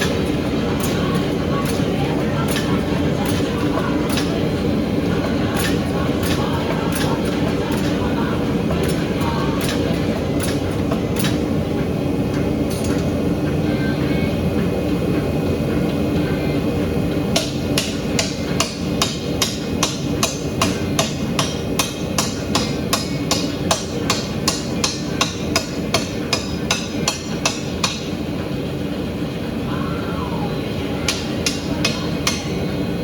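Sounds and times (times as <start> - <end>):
continuous low roar: 0.0 - 33.0
hammer striking steel on anvil: 17.4 - 28.2, 31.1 - 32.7.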